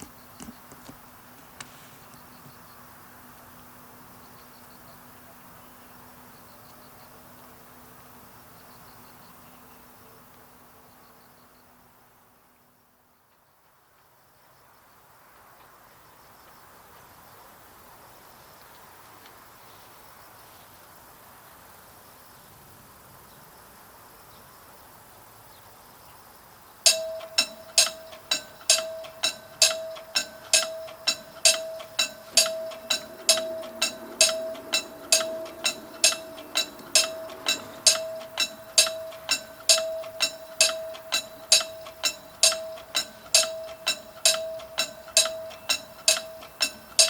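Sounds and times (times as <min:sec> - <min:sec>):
faint outdoor background: 0:00.0 - 0:47.0
railroad crossing bell ringing: 0:26.9 - 0:47.0.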